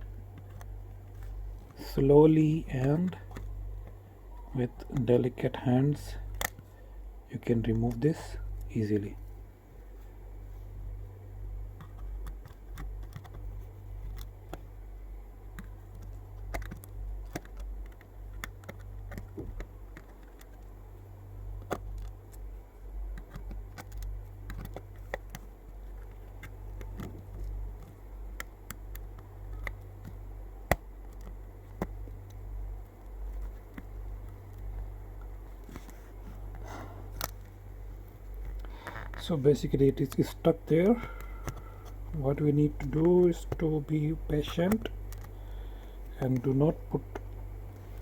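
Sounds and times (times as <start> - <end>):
steady low hum: 0.0 - 48.0
metal pry tool clicking on plastic: 15.5 - 20.6, 23.1 - 32.4, 40.8 - 42.0.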